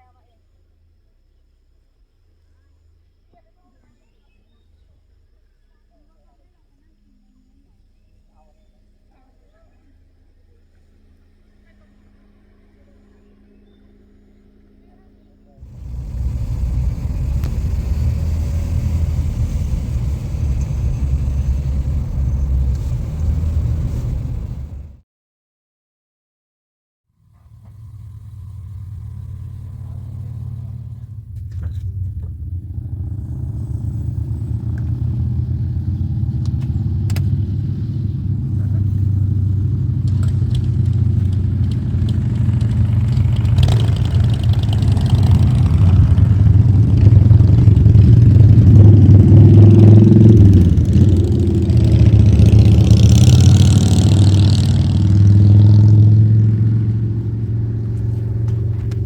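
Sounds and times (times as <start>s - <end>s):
car engine drone: 4.4s - 25.0s, 27.2s - 59.0s
road noise: 10.4s - 25.0s, 27.2s - 59.0s
rushing hiss: 15.7s - 25.0s.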